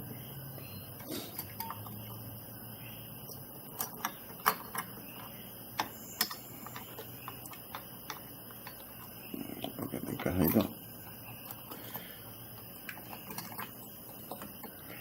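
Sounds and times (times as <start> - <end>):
cpu cooler fan clicks and taps: 3.7 - 15.0.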